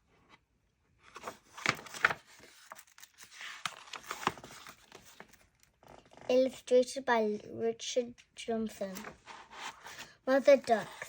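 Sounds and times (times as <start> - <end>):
paper pages rustling: 1.0 - 6.3, 8.8 - 11.0.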